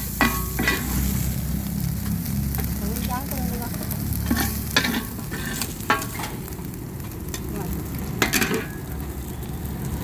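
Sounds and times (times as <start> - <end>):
metal spatula scraping pan: 0.0 - 1.3, 4.2 - 6.5
food sizzling in a wok: 0.0 - 10.0.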